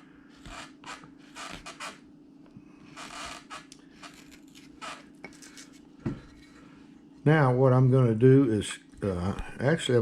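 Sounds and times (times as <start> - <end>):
carving tool scraping wood: 3.0 - 5.1.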